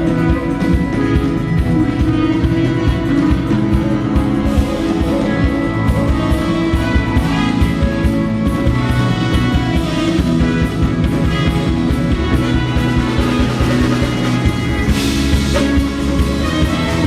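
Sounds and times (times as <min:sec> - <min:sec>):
drum kit with cymbal strokes: 0:00.0 - 0:17.0
jazz fusion band playing: 0:00.0 - 0:17.0.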